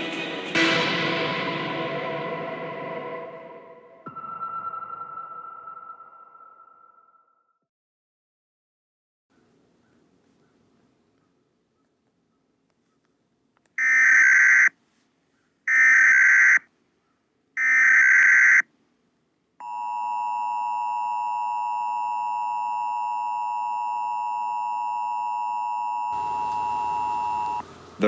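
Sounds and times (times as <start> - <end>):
two-tone attention signal: 19.6 - 27.6.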